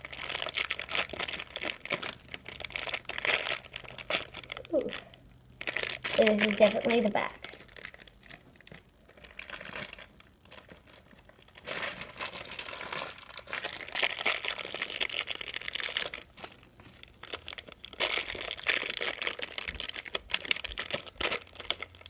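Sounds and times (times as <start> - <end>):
plastic wrapper crinkling: 0.0 - 22.0.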